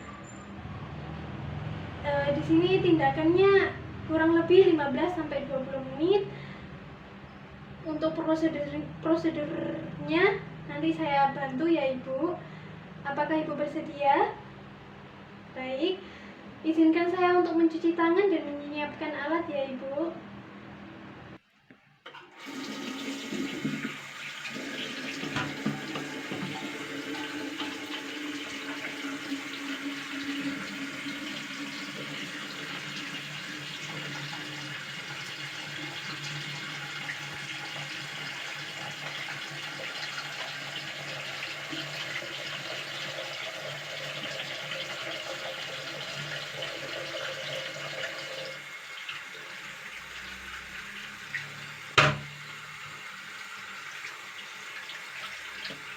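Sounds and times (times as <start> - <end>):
tap water running into sink: 22.1 - 55.9.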